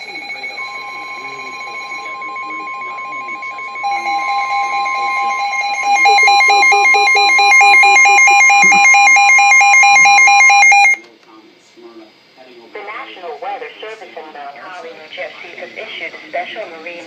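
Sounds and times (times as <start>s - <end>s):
steady high tone: 0.0s - 11.0s
two-note alarm: 0.0s - 11.0s.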